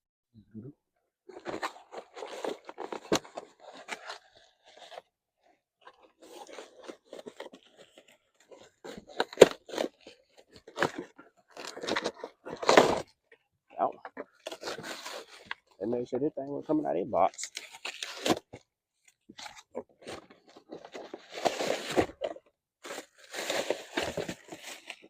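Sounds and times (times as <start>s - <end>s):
cardboard box being torn open: 8.8s - 13.1s, 17.6s - 18.5s, 20.8s - 25.0s.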